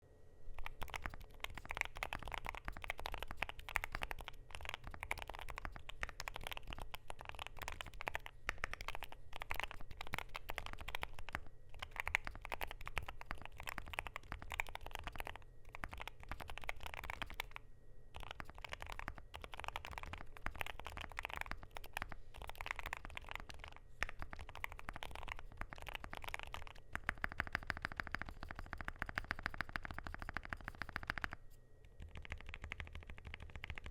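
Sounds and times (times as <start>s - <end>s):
mechanical keyboard typing: 0.6s - 17.6s, 18.2s - 33.9s.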